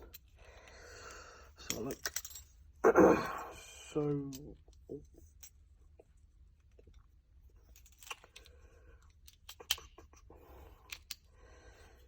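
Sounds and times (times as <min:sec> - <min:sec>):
light clicks and taps of tools: 0:04.1 - 0:11.4.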